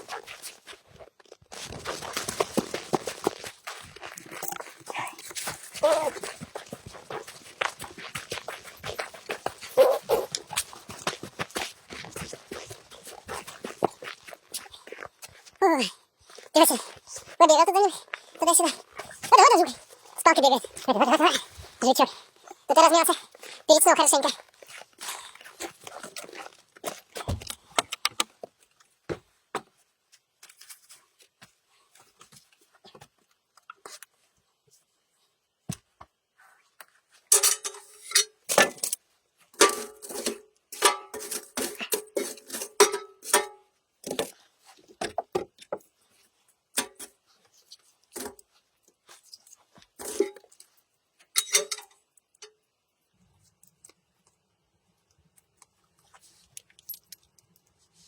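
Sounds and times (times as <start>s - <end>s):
metal utensils clattering: 37.3s - 38.8s, 51.4s - 51.9s.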